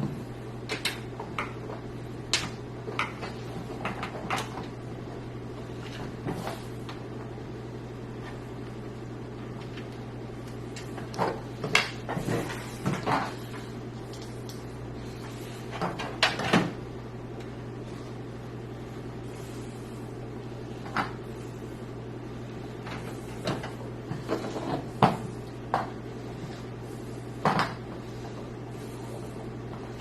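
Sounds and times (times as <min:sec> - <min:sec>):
steady low hum: 0:00.0 - 0:30.0
clicks and knocks of computer parts: 0:15.9 - 0:16.7.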